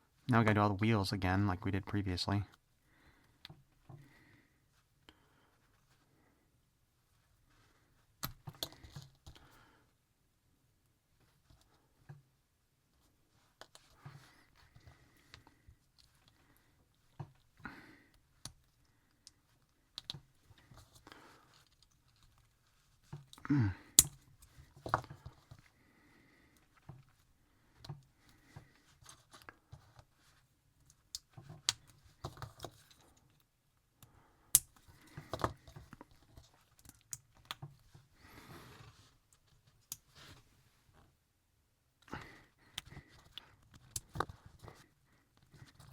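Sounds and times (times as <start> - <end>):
plastic parts clicking and snapping: 24.0 - 24.2.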